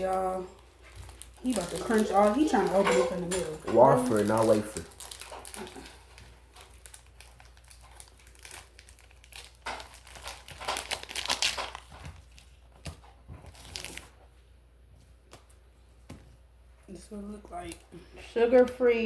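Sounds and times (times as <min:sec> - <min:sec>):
plastic wrapper crinkling and tearing: 0:00.0 - 0:14.2.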